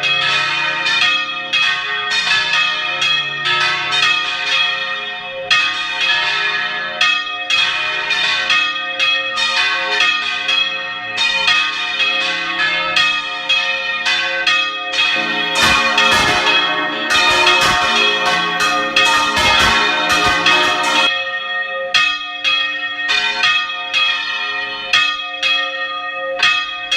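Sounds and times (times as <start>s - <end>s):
church bells ringing: 0.0s - 26.9s
deep bell strokes: 15.2s - 21.1s.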